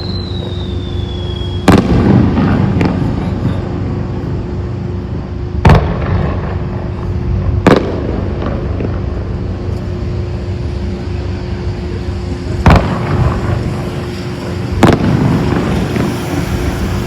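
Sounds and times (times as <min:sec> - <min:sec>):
background rumble: 0:00.0 - 0:17.0
low hum: 0:00.0 - 0:17.0
firework shells bursting: 0:12.6 - 0:17.0.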